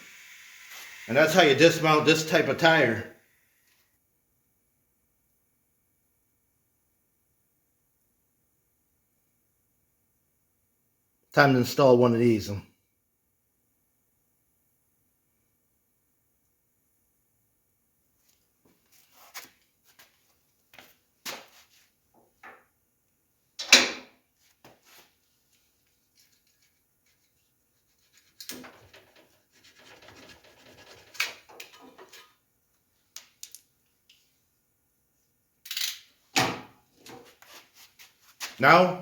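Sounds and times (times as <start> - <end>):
tools knocking and clattering: 23.6 - 24.1, 28.5 - 32.4
scratchy rubbing: 29.2 - 31.4.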